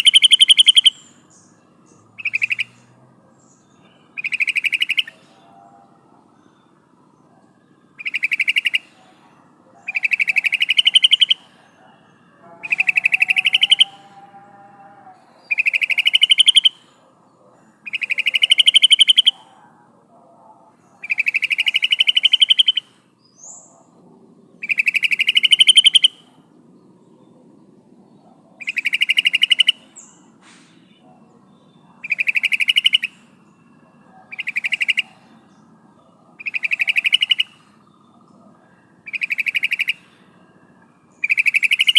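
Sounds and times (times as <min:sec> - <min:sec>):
bird chattering call: 0:00.0 - 0:01.1, 0:02.2 - 0:02.8, 0:04.2 - 0:05.3, 0:08.0 - 0:09.1, 0:09.8 - 0:11.7, 0:12.4 - 0:14.2, 0:15.4 - 0:16.9, 0:17.8 - 0:19.6, 0:21.0 - 0:23.5, 0:24.6 - 0:26.4, 0:28.3 - 0:31.0, 0:32.0 - 0:35.6, 0:36.4 - 0:37.9, 0:39.0 - 0:40.2, 0:41.2 - 0:41.9.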